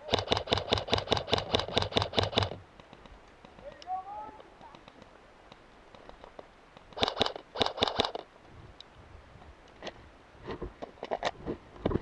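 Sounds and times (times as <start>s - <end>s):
airsoft guns firing: 0.0s - 2.6s, 7.0s - 8.2s
gun clicks: 0.0s - 3.9s, 4.7s - 8.3s.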